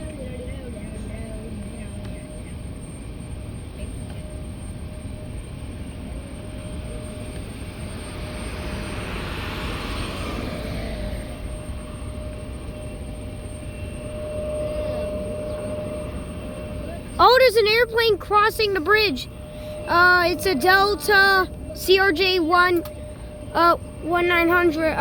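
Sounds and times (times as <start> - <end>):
airplane engine passing: 0.0 - 25.0
steady low rumble: 5.4 - 25.0.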